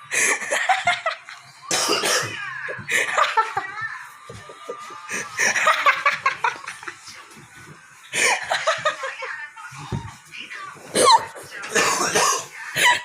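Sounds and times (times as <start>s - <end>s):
people giggling and snickering: 0.1s - 1.8s, 2.6s - 9.5s, 12.7s - 13.0s.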